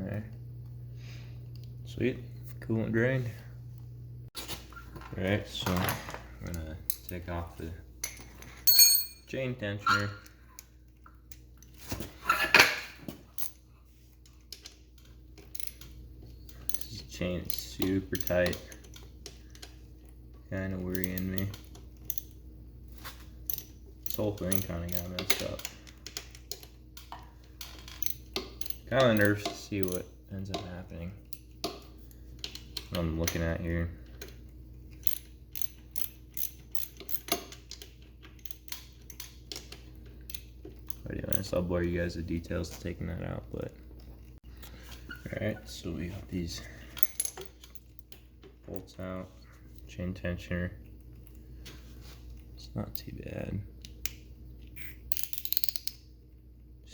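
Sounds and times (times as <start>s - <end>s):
metal tools clinking: 8.2s - 9.3s
tools rattling: 8.2s - 9.3s
ratchet wrench clicking: 35.0s - 37.4s.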